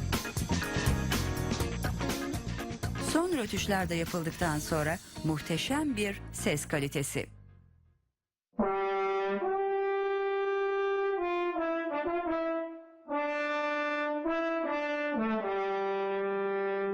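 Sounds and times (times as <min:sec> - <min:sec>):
french horn playing: 0:08.6 - 0:16.9.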